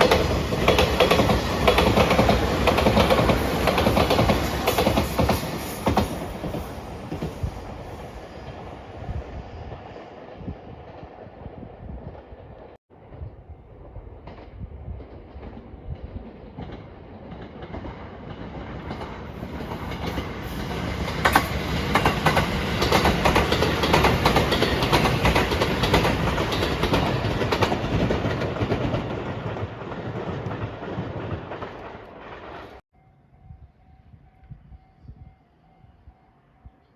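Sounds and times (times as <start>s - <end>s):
wheels clacking over rail joints: 0.0s - 7.5s, 14.2s - 32.8s
electric train passing: 0.0s - 36.9s.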